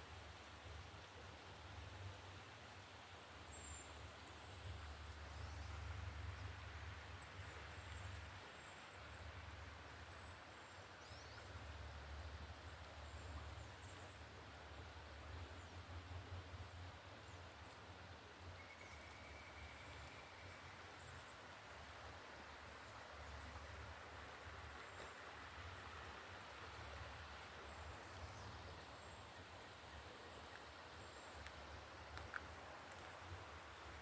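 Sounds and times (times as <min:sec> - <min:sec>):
faint steady hiss: 0:00.0 - 0:34.0.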